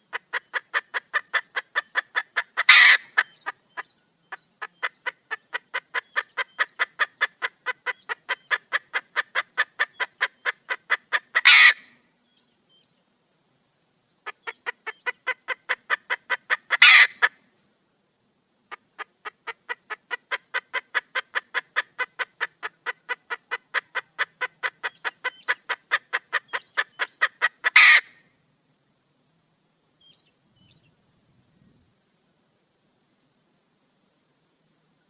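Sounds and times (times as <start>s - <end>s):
hen cackling: 0.0s - 12.0s, 14.2s - 17.4s, 18.7s - 28.3s.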